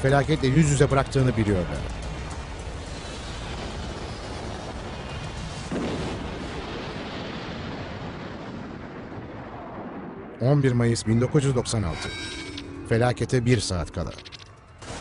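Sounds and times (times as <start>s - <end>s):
rumbling explosion: 0.3s - 15.0s.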